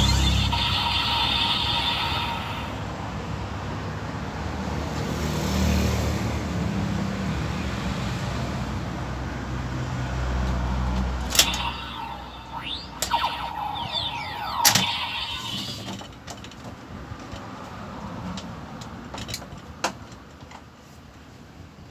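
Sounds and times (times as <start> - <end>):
toy electronic pitch glides: 0.0 - 3.0, 11.3 - 16.0
sharp toy clicks: 11.3 - 16.0.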